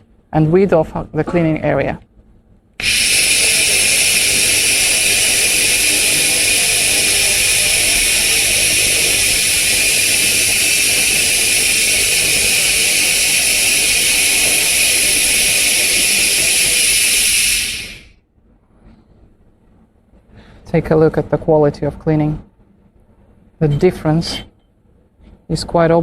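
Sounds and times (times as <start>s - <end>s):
laser cleaning high-pitched hiss: 2.8s - 18.2s.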